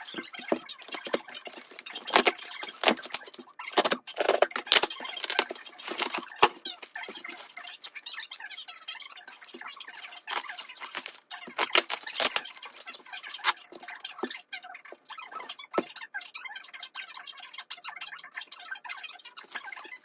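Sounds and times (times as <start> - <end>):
packaging crinkling and rustling: 0.0 - 7.7, 9.4 - 13.6
packaging crackles: 0.8 - 7.6, 9.5 - 13.6.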